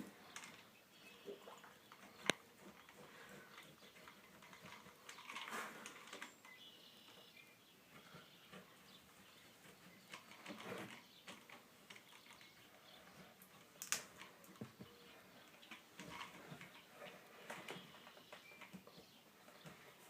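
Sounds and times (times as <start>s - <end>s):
faint rubbing and scraping: 0.0s - 6.4s, 7.9s - 13.6s
small clicks: 13.4s - 19.0s.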